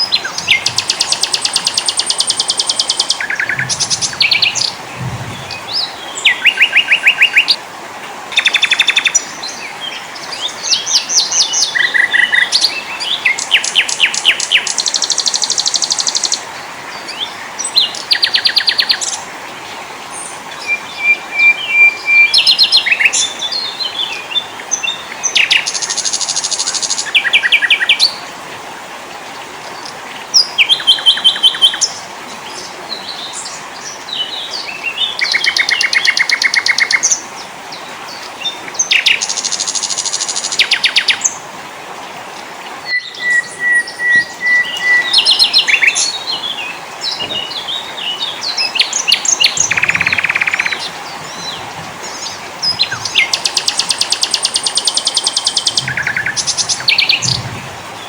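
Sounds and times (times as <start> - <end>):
songbirds trilling and chirping: 0.0 - 7.6, 42.0 - 58.0
steady background hiss: 0.0 - 58.0.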